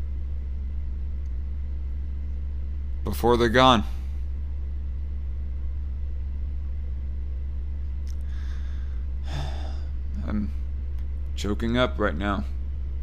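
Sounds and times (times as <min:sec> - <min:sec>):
steady low hum: 0:00.0 - 0:13.0
faint breath: 0:08.2 - 0:10.0.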